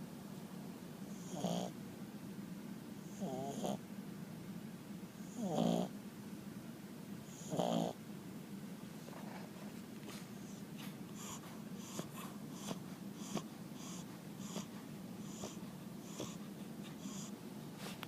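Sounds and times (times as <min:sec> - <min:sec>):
steady low hum: 0:00.0 - 0:18.0
pet wheezy breathing: 0:10.1 - 0:18.0.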